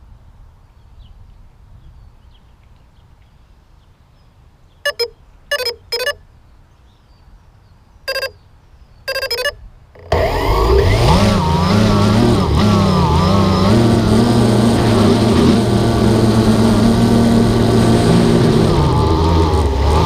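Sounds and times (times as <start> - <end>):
short pitched bursts: 4.9 - 6.2, 8.1 - 8.4, 9.1 - 12.1
engine running and revving: 10.0 - 20.0.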